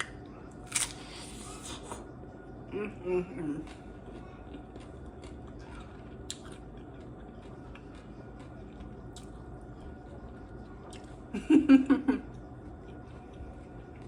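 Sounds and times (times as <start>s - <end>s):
sharp food crunches: 0.0s - 1.4s, 3.7s - 9.4s
soft wet chewing: 3.6s - 11.4s, 12.2s - 14.0s.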